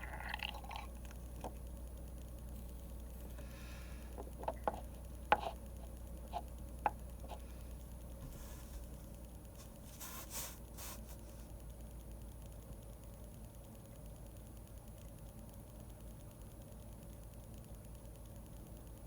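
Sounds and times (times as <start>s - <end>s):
low steady hum: 0.0s - 19.0s
pen clicks and taps on desk: 4.3s - 5.5s
pen scratching strokes: 5.3s - 5.6s, 8.2s - 9.0s, 9.6s - 11.5s.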